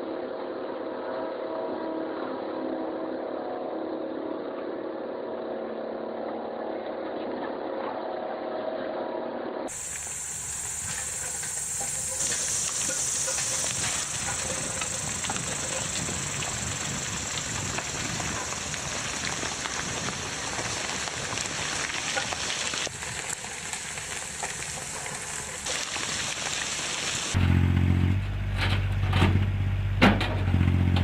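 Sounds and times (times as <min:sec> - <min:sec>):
machine engine droning: 0:00.0 - 0:22.0, 0:27.4 - 0:31.0
loud hissing spray: 0:09.7 - 0:27.4.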